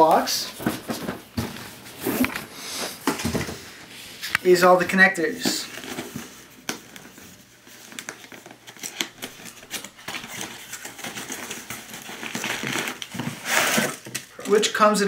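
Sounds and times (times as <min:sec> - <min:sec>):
packaging crinkling and rustling: 0:05.3 - 0:14.8.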